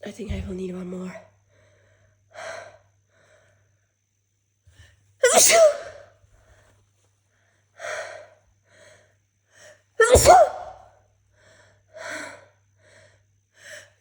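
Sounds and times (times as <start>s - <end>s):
person sneezing: 5.2s - 6.0s, 10.0s - 10.8s.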